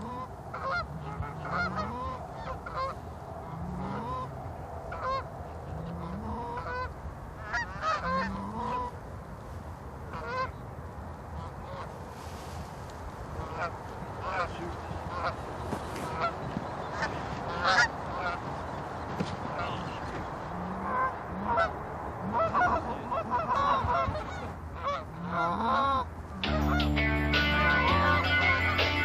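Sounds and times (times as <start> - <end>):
geese honking: 0.0 - 9.0, 10.1 - 10.6, 11.3 - 12.6, 13.2 - 18.6, 19.2 - 29.0
low rising honks: 26.3 - 29.0.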